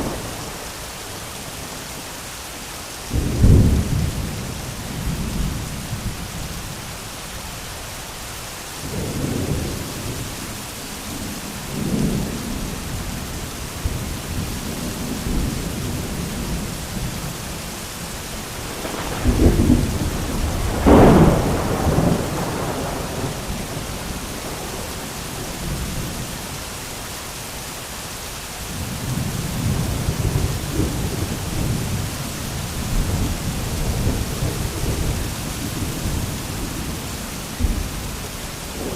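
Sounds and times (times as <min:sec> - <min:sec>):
thunder rumbling: 0:00.0 - 0:01.2, 0:13.8 - 0:26.3, 0:28.7 - 0:38.9
rain hissing: 0:00.0 - 0:38.9.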